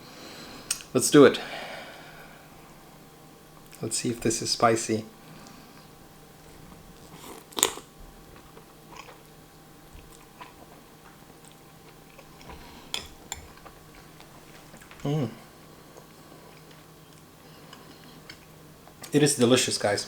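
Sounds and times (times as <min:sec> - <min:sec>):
soft chewing: 0:05.3 - 0:19.5
loud bite: 0:07.2 - 0:07.9.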